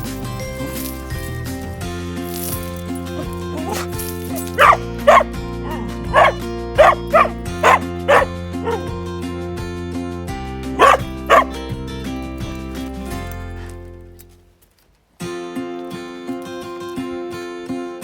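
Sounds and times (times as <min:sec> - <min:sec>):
background music: 0:00.0 - 0:14.2
dog barking: 0:03.2 - 0:08.9, 0:10.8 - 0:11.6.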